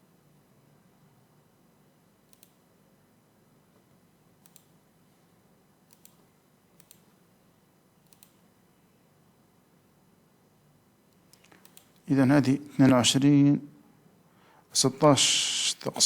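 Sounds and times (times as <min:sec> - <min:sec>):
computer mouse clicks: 0:02.3 - 0:02.6, 0:04.4 - 0:04.8, 0:05.9 - 0:07.1, 0:08.0 - 0:08.4, 0:11.1 - 0:12.0.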